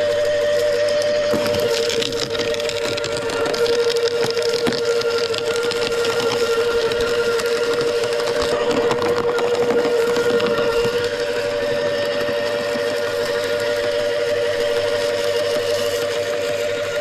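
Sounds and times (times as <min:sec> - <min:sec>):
wood chipper running: 0:00.0 - 0:17.0
wood crackling and snapping: 0:00.5 - 0:14.1.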